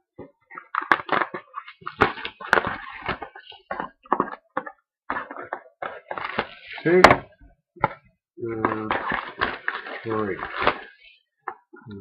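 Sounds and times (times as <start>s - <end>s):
cellophane wrap tearing and crinkling: 0.5s - 4.6s, 8.5s - 11.1s.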